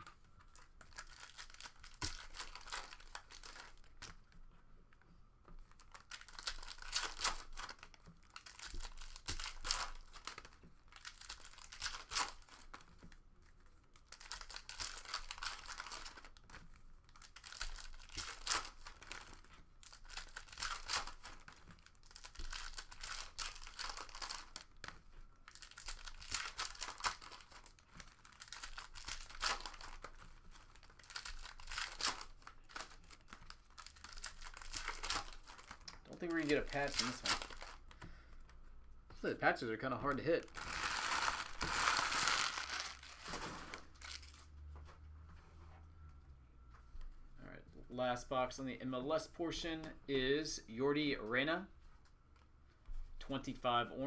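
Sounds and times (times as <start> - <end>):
foil wrappers tearing and crinkling: 0.6 - 4.1, 5.7 - 12.9, 13.9 - 24.9, 25.5 - 38.0, 40.4 - 44.5
cards being handled: 5.5 - 39.3, 40.0 - 44.4.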